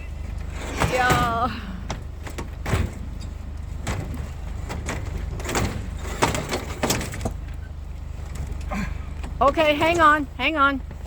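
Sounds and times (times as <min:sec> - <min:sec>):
vehicle engine idling: 0:00.0 - 0:11.0
scrap metal knocking and clattering: 0:00.3 - 0:11.0.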